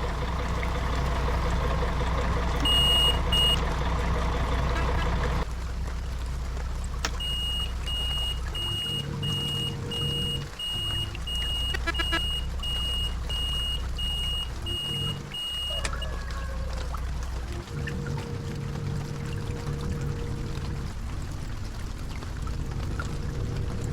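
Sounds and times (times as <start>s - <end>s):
bus engine humming: 0.0s - 23.9s
high electronic beeps: 2.6s - 3.6s.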